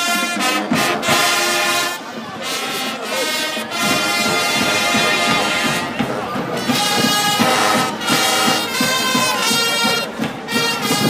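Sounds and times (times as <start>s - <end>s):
brass band playing loud chords: 0.0s - 11.0s.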